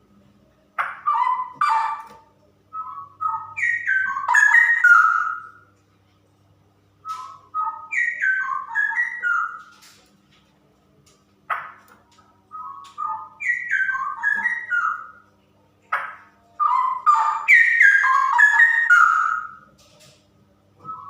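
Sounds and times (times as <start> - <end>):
bird singing whistled phrases: 2.7 - 5.6, 7.0 - 9.7, 12.5 - 15.2, 16.6 - 19.7, 20.8 - 21.0.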